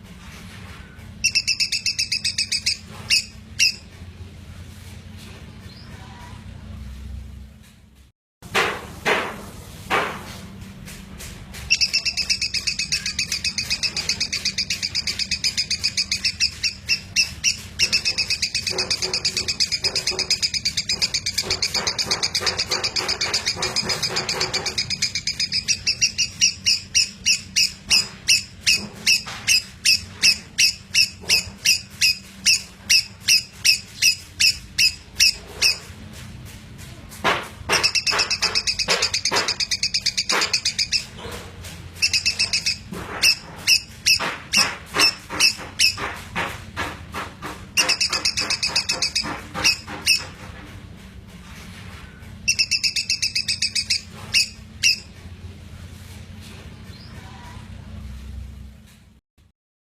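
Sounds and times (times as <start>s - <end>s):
lovebird chattering: 1.2s - 3.8s, 11.7s - 35.9s, 37.7s - 41.2s, 42.0s - 46.1s, 47.8s - 50.3s, 52.5s - 55.1s.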